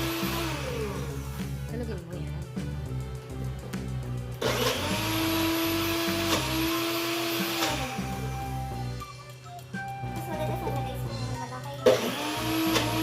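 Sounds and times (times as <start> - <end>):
blender motor whining: 0.0 - 1.7, 4.4 - 13.0
background music: 0.0 - 13.0.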